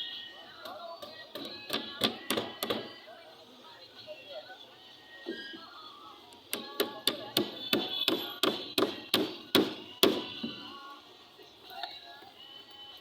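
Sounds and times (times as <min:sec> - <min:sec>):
hammer blows ringing: 0:06.8 - 0:10.6.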